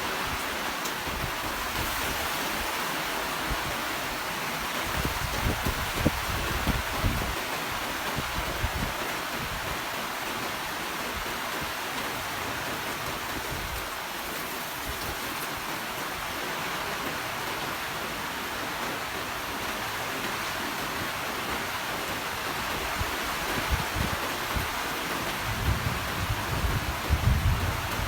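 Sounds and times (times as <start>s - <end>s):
heavy rain falling: 0.0s - 28.0s
wind buffeting microphone: 4.8s - 9.8s, 22.6s - 28.0s.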